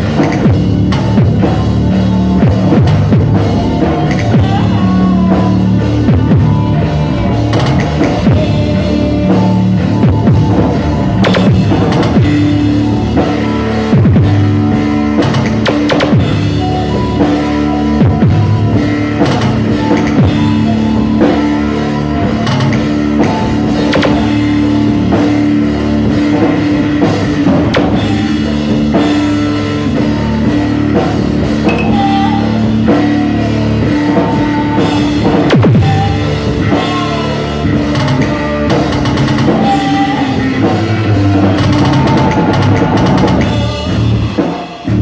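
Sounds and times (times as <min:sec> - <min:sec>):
drum kit beat: 0:00.0 - 0:45.0
rock band playing: 0:00.0 - 0:45.0.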